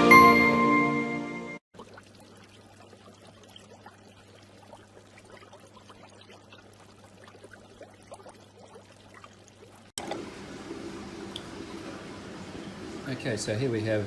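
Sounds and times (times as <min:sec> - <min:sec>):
bubbles popping: 0:01.7 - 0:10.8
aquarium water trickling: 0:01.7 - 0:14.0
low electrical hum: 0:01.8 - 0:14.0.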